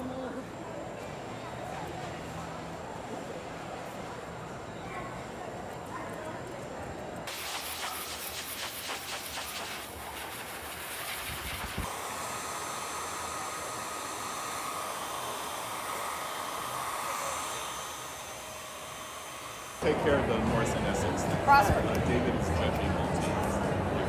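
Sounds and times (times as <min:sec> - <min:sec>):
scratchy noise: 0:07.3 - 0:11.9
blow dryer running: 0:07.3 - 0:24.0.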